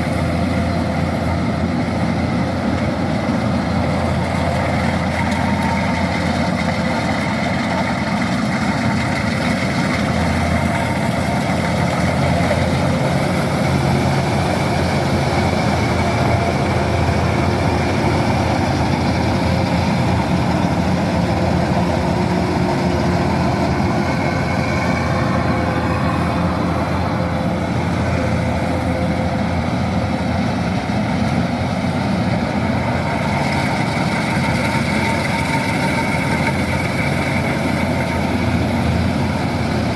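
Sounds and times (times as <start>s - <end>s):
combine harvester running: 0.0s - 39.9s.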